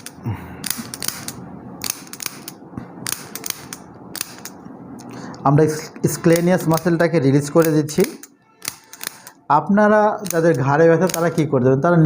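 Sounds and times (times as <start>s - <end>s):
adjusting gun clicking: 0.0s - 4.6s, 7.6s - 9.4s, 10.2s - 11.3s.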